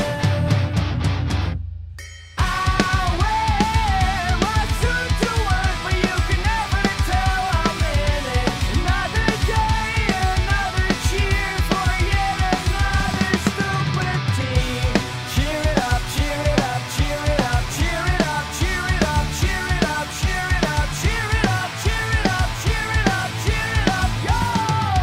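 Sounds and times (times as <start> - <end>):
rock drum beat: 0.0 - 25.0.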